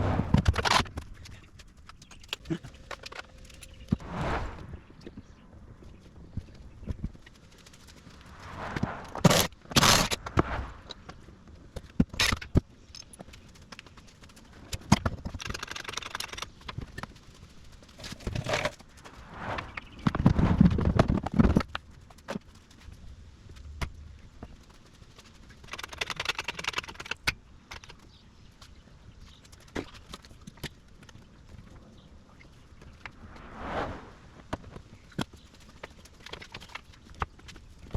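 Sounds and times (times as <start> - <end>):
heavy object dragged: 33.2 - 34.4.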